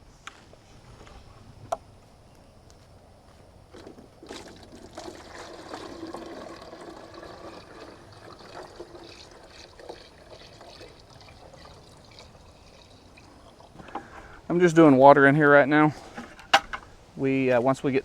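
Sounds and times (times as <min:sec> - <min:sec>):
water pouring into plastic container: 0:03.7 - 0:14.4.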